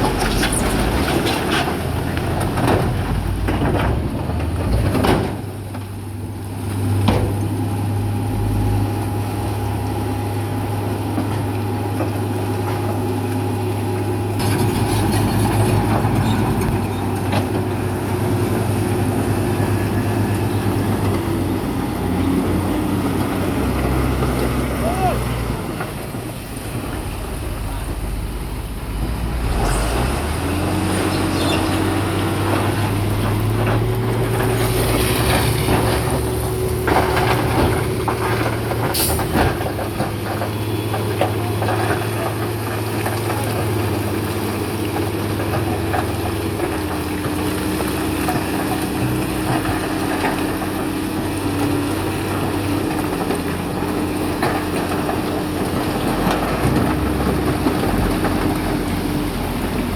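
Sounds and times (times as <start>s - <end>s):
diesel engine running under load: 0.0s - 59.9s
metallic clanks and scrapes: 14.4s - 17.0s.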